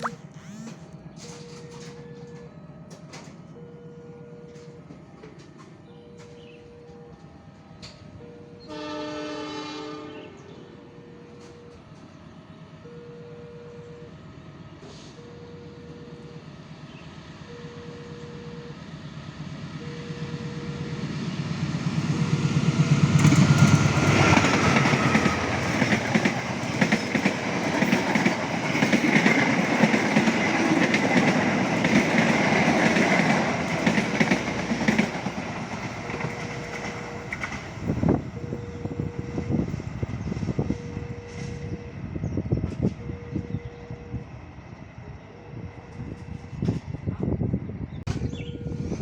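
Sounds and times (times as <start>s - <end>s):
train wheels clattering: 22.1s - 38.0s.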